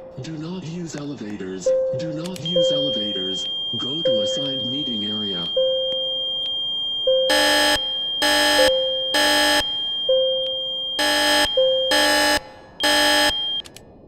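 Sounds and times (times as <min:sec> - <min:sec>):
fire alarm horn blasts: 0:02.5 - 0:13.7.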